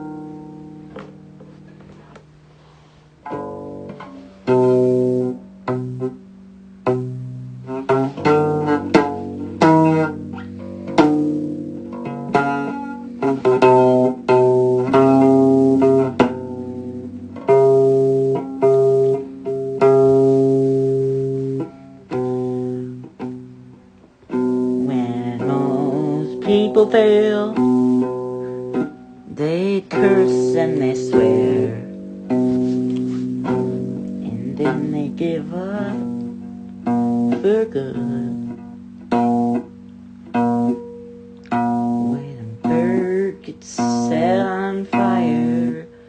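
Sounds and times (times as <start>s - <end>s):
plucked guitar notes: 0.0s - 2.4s, 3.2s - 46.0s
held low bass line: 27.4s - 40.8s.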